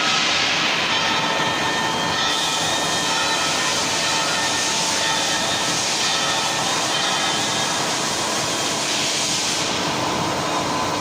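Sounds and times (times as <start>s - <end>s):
lathe machine hiss: 0.0s - 11.0s.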